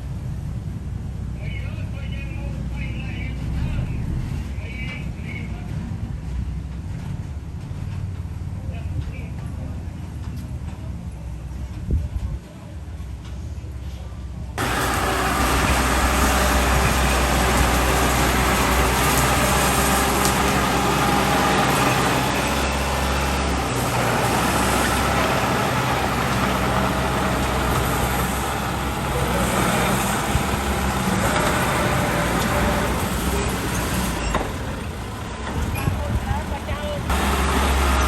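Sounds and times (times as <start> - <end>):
heavy diesel engine running: 0.0 - 11.9, 12.8 - 38.0.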